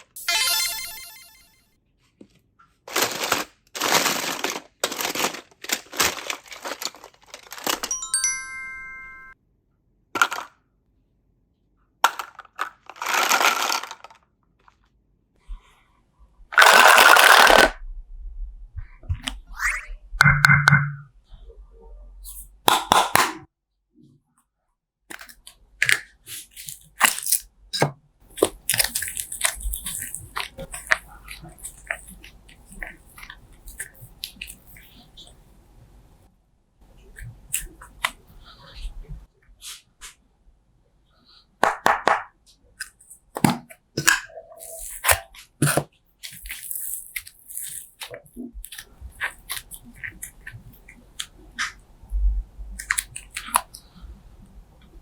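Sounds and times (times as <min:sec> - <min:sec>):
slime crackling and popping: 0:25.1 - 0:27.4, 0:28.2 - 0:35.4, 0:42.8 - 0:51.8, 0:52.8 - 0:53.8.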